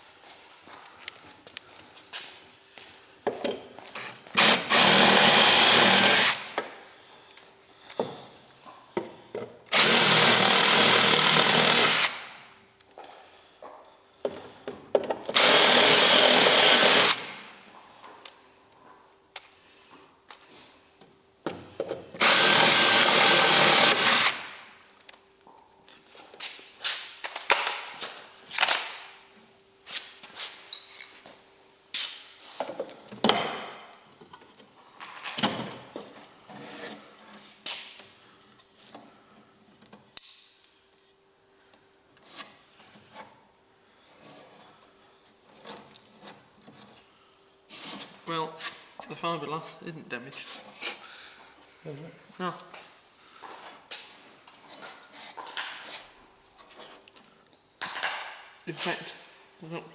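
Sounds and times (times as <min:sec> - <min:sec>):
handheld power tool running: 0:04.3 - 0:06.6, 0:09.7 - 0:12.4, 0:15.3 - 0:17.5, 0:22.2 - 0:24.6.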